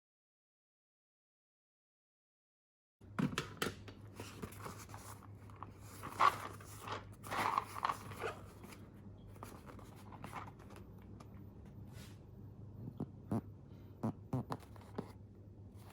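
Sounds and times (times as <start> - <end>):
packaging rustling and crinkling: 4.2 - 11.2.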